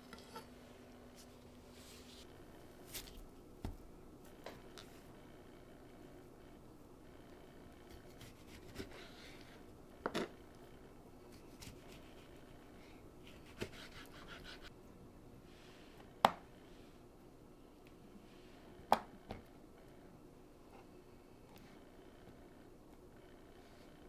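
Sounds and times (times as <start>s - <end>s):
soft scraping and rustling: 1.1s - 3.2s.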